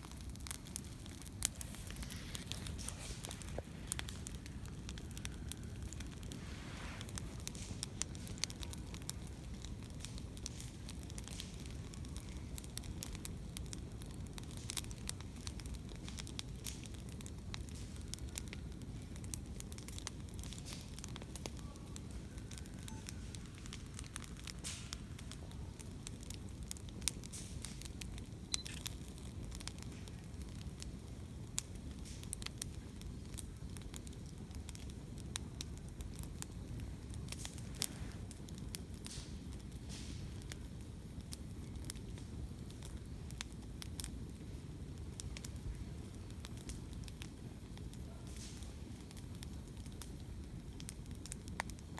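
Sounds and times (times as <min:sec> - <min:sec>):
bonfire crackling and popping: 0:00.0 - 0:51.9
low fire rumble: 0:00.0 - 0:51.9.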